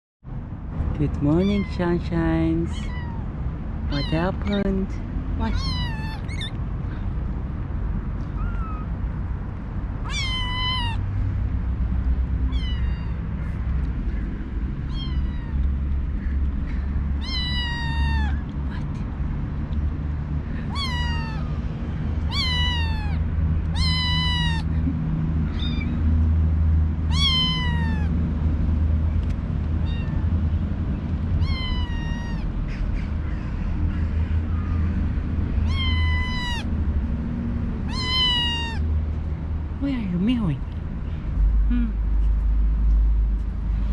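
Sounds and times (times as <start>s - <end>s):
kitten meowing: 1.4s - 1.9s, 2.7s - 3.3s, 3.9s - 4.8s, 5.4s - 6.6s, 8.3s - 8.9s, 10.0s - 11.1s, 12.4s - 13.6s, 14.8s - 16.0s, 17.1s - 18.9s, 20.6s - 21.6s, 22.2s - 26.0s, 27.0s - 28.2s, 29.8s - 30.3s, 31.4s - 32.6s, 35.6s - 36.7s, 37.9s - 38.8s.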